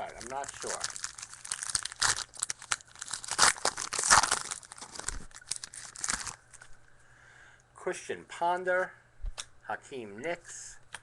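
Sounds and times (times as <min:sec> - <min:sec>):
wrappers crinkling and tearing: 0:00.0 - 0:06.7.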